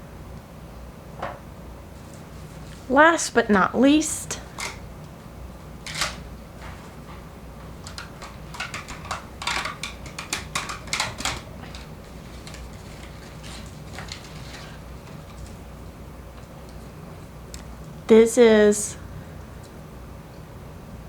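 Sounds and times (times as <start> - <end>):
packaging crinkling and clicking: 5.8 - 6.3, 7.8 - 15.6.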